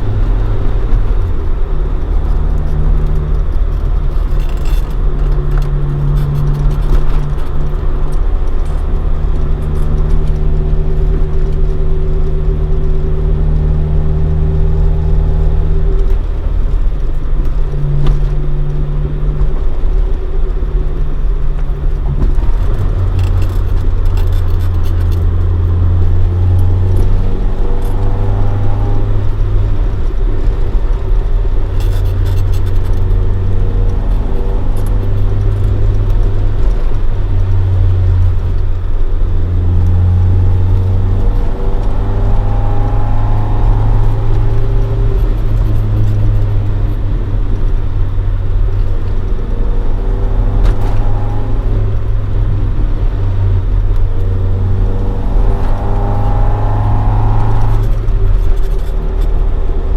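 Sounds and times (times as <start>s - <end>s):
car engine cruising: 0.0s - 59.9s.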